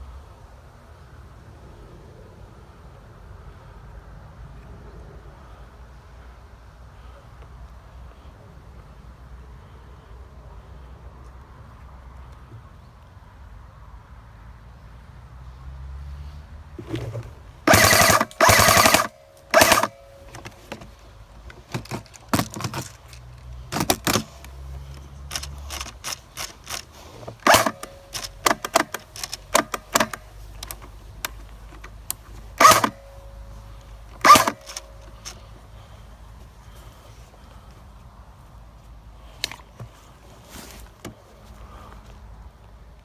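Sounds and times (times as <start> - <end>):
airsoft gun firing bursts: 17.7 - 20.1, 25.3 - 30.2, 32.6 - 33.2, 34.2 - 34.9.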